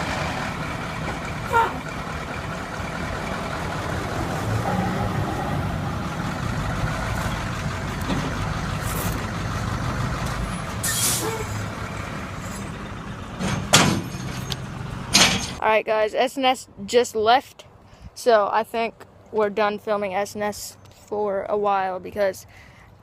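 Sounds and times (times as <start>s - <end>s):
diesel truck engine running: 0.0s - 15.6s
air brake hisses: 10.8s - 11.6s.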